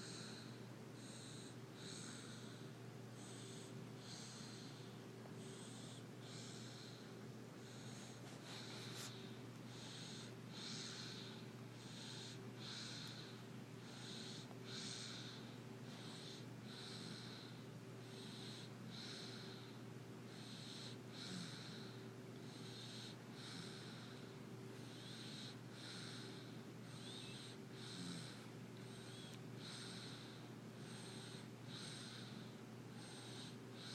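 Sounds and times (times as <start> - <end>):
baby snoring softly: 0.0 - 33.9
steady low hum: 0.0 - 33.9.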